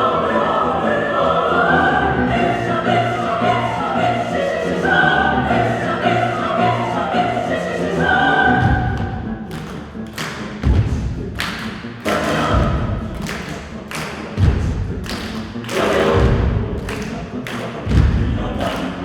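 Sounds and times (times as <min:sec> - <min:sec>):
mixed choir singing: 0:00.0 - 0:19.0.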